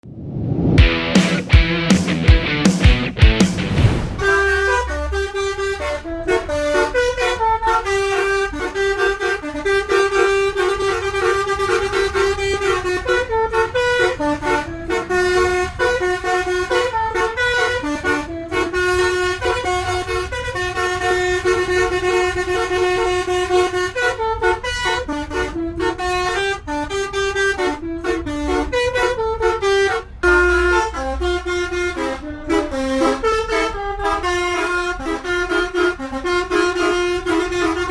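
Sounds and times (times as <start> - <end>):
low rumble: 0.2 - 4.5
multi-tone bus horn tune: 4.2 - 37.9.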